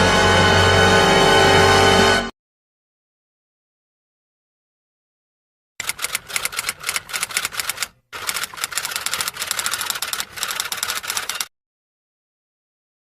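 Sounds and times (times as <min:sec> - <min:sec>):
rapid keyboard typing: 0:05.8 - 0:11.5.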